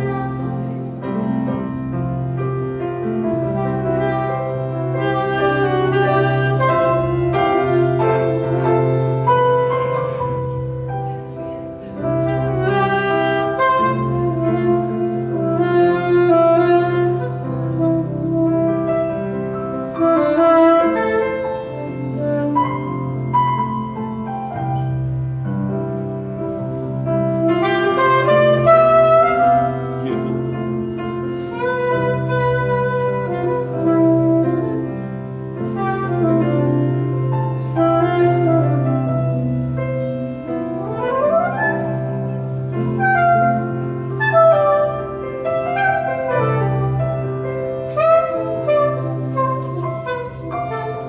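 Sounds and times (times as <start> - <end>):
piano accompaniment: 0.0 - 51.0
saxophone improvising: 3.3 - 9.4, 27.4 - 51.0.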